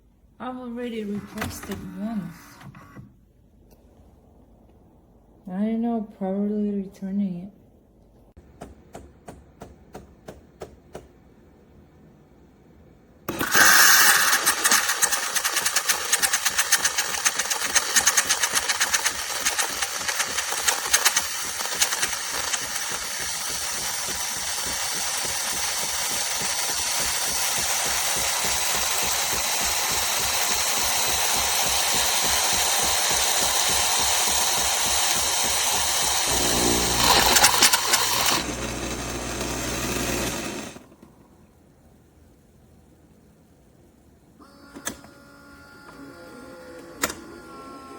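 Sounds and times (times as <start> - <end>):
coffee grinder grinding beans: 13.3 - 41.0.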